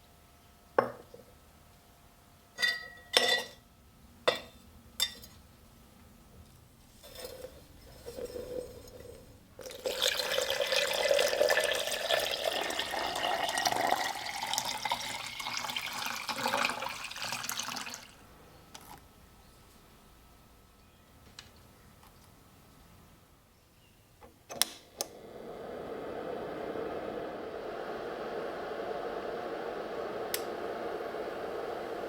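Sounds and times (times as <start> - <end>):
small clink: 2.6 - 3.6.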